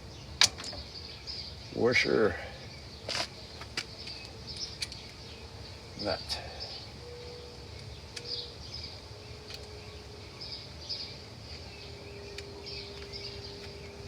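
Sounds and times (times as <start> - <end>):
high chirping: 2.6 - 14.0
faint steady tone: 5.3 - 14.0.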